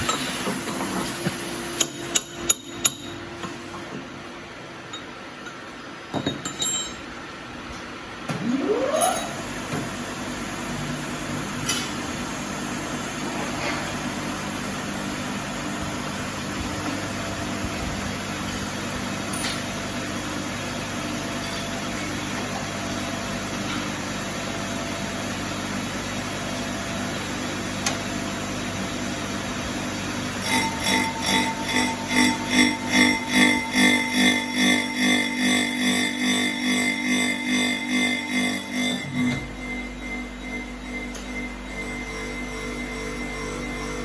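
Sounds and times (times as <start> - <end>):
electric motor running: 30.4 - 39.5.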